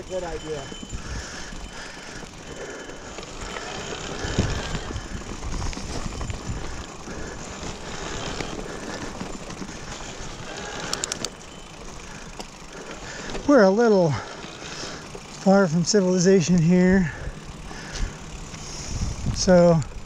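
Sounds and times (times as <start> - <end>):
bike tyre rolling noise: 0.0 - 20.0
sharp clicks: 10.8 - 11.5.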